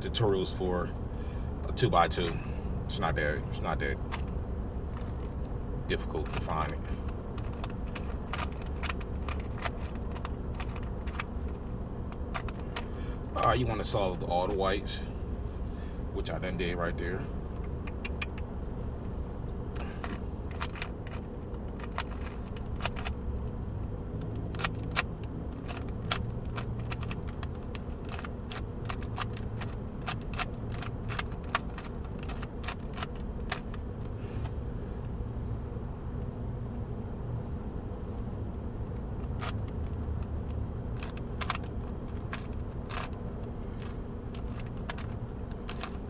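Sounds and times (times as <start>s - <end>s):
puzzle cube clicking: 7.4s - 11.4s, 17.6s - 18.5s, 24.3s - 33.8s, 40.9s - 43.2s.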